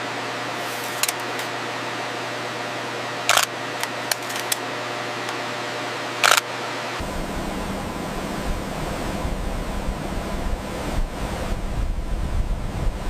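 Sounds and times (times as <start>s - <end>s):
mechanical hum and hiss: 0.0s - 13.0s
sharp clicks: 3.3s - 4.6s, 6.2s - 6.4s
low rumble: 7.0s - 13.0s.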